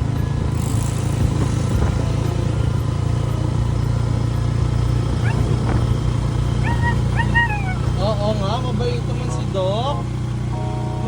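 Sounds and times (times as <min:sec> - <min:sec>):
vehicle engine humming: 0:00.0 - 0:11.0
dog whining: 0:05.1 - 0:08.4.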